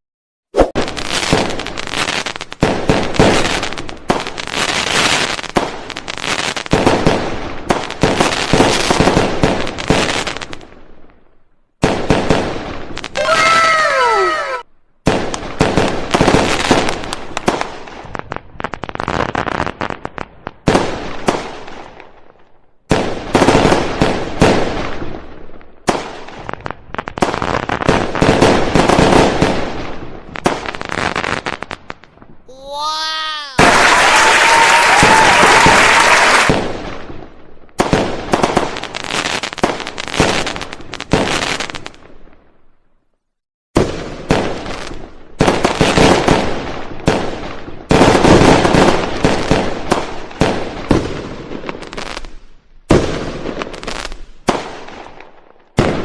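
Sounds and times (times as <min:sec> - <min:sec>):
fireworks exploding and crackling: 0:00.6 - 0:42.7, 0:43.8 - 0:56.0
firework whistle: 0:33.6 - 0:36.6.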